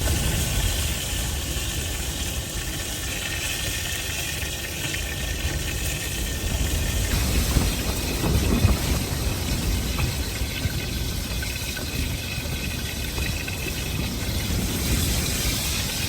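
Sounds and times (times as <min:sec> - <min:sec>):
blizzard wind blowing: 0:05.4 - 0:16.0.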